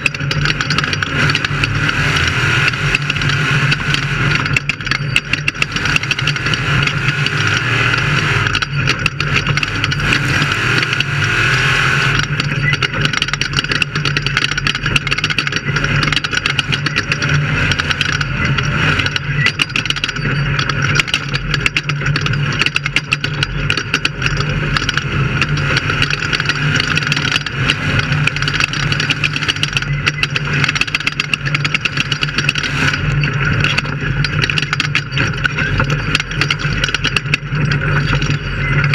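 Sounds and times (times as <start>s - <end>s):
rattles and knocks: 0.0s - 11.4s, 12.1s - 38.9s
engine running hard: 0.0s - 38.9s.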